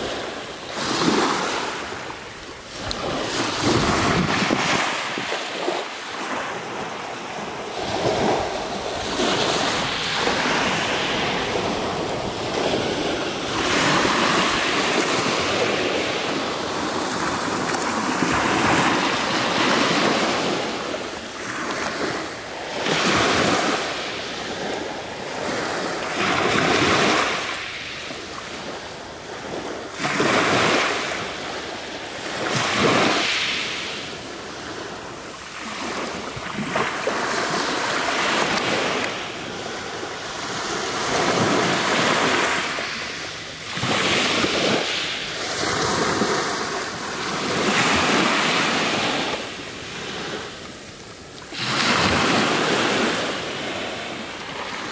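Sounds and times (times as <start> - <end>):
waves washing over pebbles: 2.6 - 27.8.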